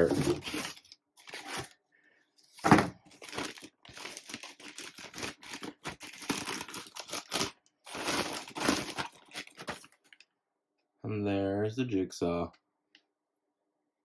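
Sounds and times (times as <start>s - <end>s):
packaging crinkling: 0.0s - 1.8s, 2.6s - 10.2s.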